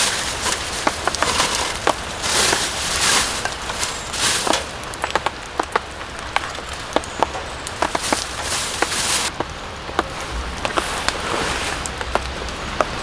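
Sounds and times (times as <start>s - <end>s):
fire hiss: 0.0s - 9.4s, 10.1s - 12.6s
campfire crackling and popping: 0.0s - 13.0s.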